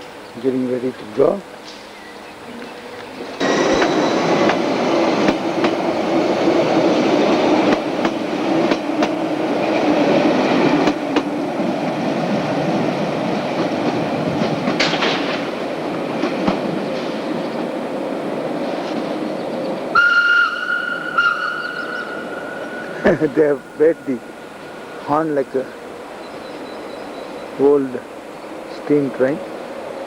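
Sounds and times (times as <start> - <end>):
train rail rumble: 0.0 - 30.0
wheels clicking over rail joints: 3.3 - 17.7.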